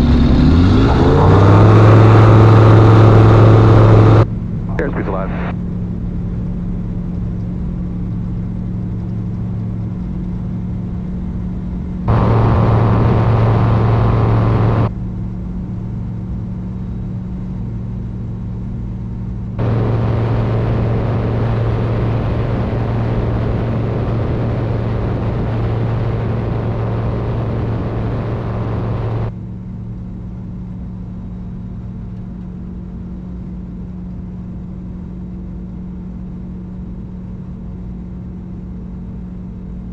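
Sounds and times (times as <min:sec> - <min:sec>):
airplane engine droning: 0:00.0 - 0:06.4, 0:11.6 - 0:14.9, 0:19.2 - 0:29.3
loud rushing hiss: 0:12.1 - 0:14.9, 0:19.6 - 0:29.3.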